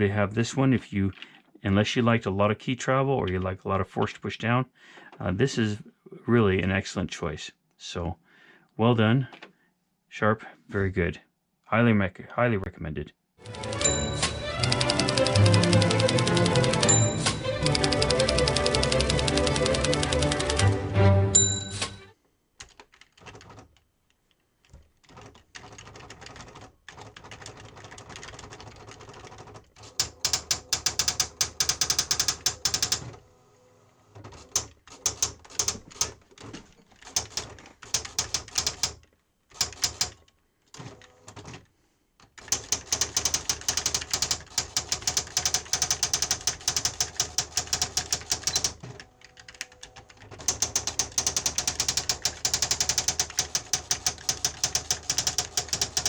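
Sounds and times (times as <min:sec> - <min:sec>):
electronic typewriter print strikes: 0:13.4 - 0:20.7, 0:21.4 - 0:22.1, 0:29.8 - 0:33.1, 0:34.4 - 0:36.2, 0:37.0 - 0:39.0, 0:39.6 - 0:40.2, 0:42.4 - 0:49.7, 0:50.3 - 0:56.0.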